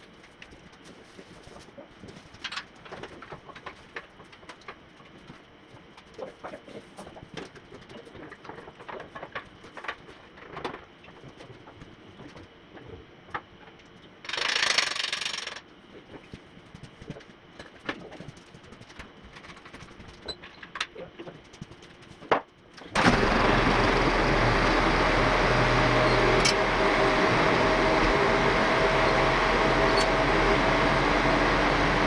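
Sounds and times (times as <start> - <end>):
loud steady noise: 23.0 - 32.0.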